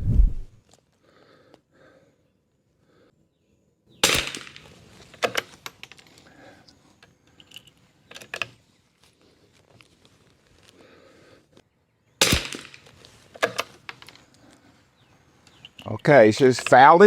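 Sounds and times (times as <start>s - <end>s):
rifle shot: 4.0s - 5.4s, 12.2s - 13.7s
sharp clicks and knocks: 4.1s - 6.1s, 12.2s - 14.3s.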